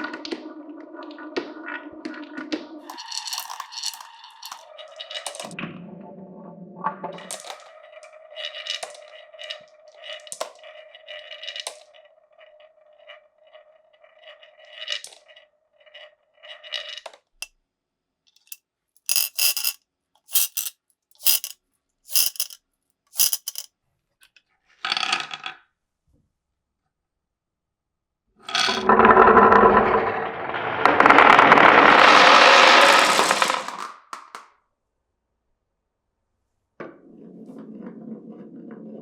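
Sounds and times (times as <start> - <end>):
marbles clattering: 2.9 - 4.6, 19.1 - 21.5, 22.1 - 22.6, 23.2 - 23.7, 30.8 - 33.9
marbles rolling on wood: 2.9 - 4.6, 19.1 - 21.5, 22.1 - 22.6, 23.2 - 23.7, 28.5 - 34.4.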